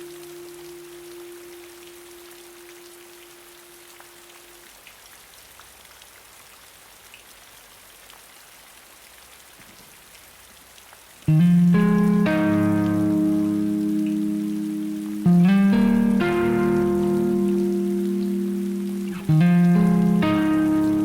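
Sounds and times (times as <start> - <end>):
steady rain: 0.0 - 21.0
electric guitar: 11.3 - 21.0.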